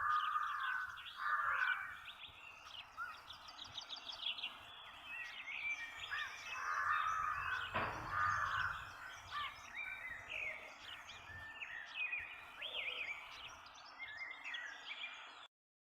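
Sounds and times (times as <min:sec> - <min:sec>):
harsh rasping bird call: 0:00.0 - 0:02.1, 0:06.1 - 0:09.6
faint outdoor hiss: 0:00.0 - 0:15.4
songbirds chirping and trilling: 0:00.0 - 0:15.5.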